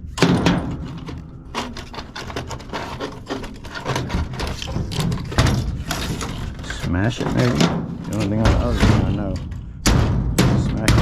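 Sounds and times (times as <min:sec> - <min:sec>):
metal parts clattering: 0:00.0 - 0:11.0
loud knock: 0:09.8 - 0:11.0.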